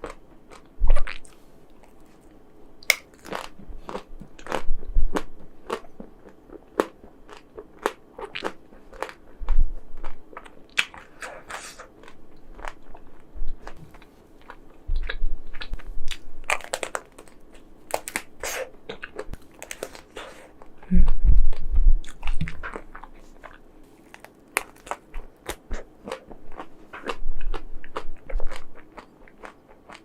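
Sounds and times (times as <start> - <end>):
chewing ice cream: 0.0 - 2.4, 3.1 - 30.0
crisp chocolate crunching: 14.4 - 20.8, 22.1 - 30.0.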